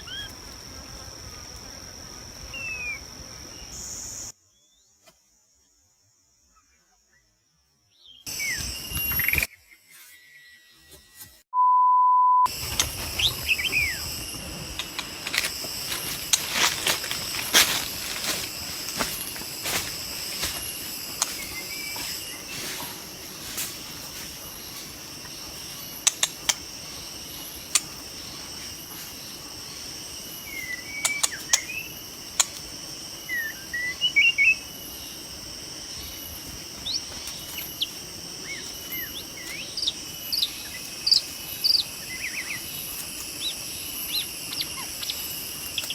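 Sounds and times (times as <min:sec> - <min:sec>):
insects buzzing high-pitched: 0:00.0 - 0:11.4, 0:12.5 - 0:45.9
steady beep: 0:11.6 - 0:12.5
sharp clicks: 0:26.1 - 0:26.6.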